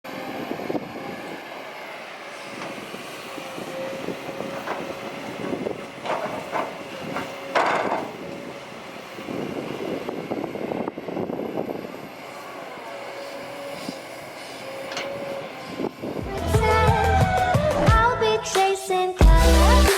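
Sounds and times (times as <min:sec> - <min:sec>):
excavator engine running: 0:00.1 - 0:18.1, 0:19.2 - 0:19.9
hydraulic whine: 0:00.1 - 0:18.1
metallic clanks and knocks: 0:05.4 - 0:08.2.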